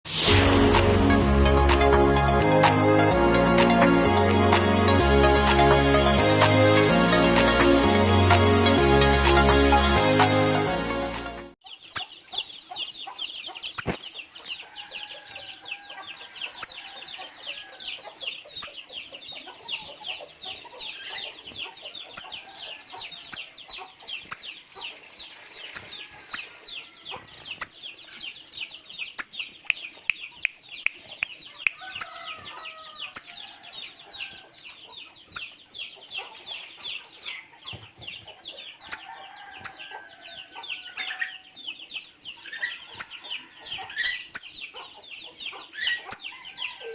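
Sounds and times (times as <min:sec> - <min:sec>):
chickens clucking: 0:11.6 - 0:46.9
sunbird twittering: 0:11.6 - 0:46.9.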